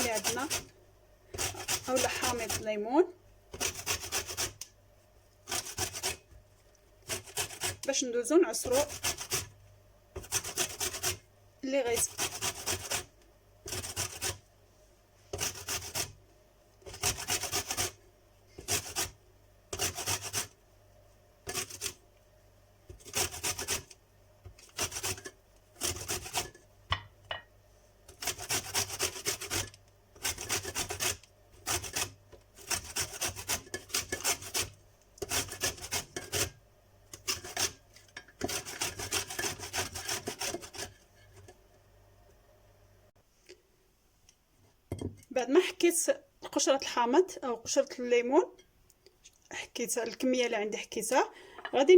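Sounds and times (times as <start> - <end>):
lemon peel grating: 5.5 - 6.2, 7.0 - 7.9, 10.2 - 11.2, 18.6 - 20.5, 23.0 - 23.9, 28.1 - 36.5, 38.4 - 40.9.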